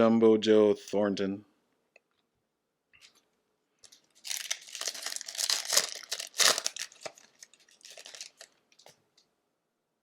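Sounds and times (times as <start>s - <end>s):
wrapper crinkling and tearing: 3.8s - 8.9s.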